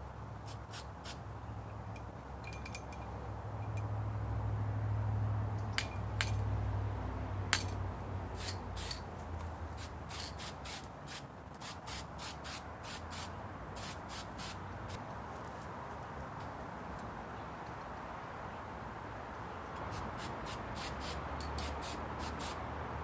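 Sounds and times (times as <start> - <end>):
short sharp hissing bursts: 0.4 - 1.2, 8.4 - 9.0, 9.7 - 14.6, 19.9 - 22.6.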